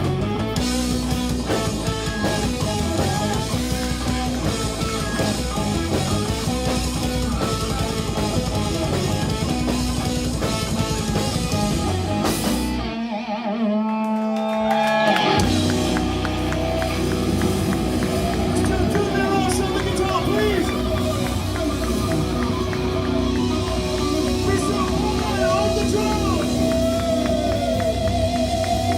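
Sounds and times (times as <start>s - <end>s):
bass guitar: 0.0s - 28.9s
drums: 0.0s - 28.9s
electric guitar: 0.0s - 28.9s.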